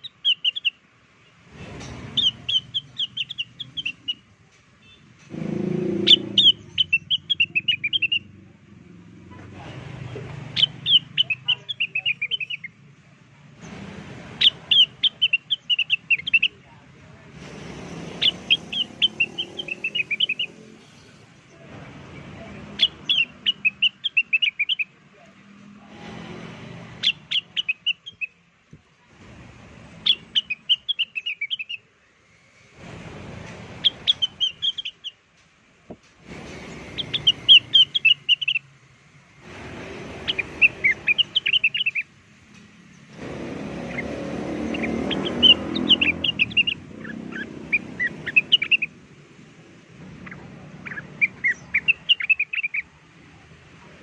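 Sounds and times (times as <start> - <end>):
bird chirping: 0.0 - 8.4, 10.5 - 12.8, 14.4 - 16.8, 17.4 - 25.0, 26.8 - 28.4, 30.0 - 32.4, 33.8 - 35.2, 36.4 - 38.7, 39.9 - 49.0, 50.2 - 53.0
background noise: 0.0 - 54.0.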